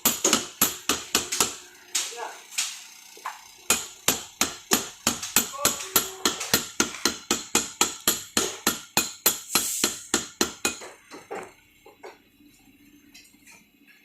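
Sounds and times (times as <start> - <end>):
rapid hammer blows: 0.0 - 2.7, 3.7 - 10.8.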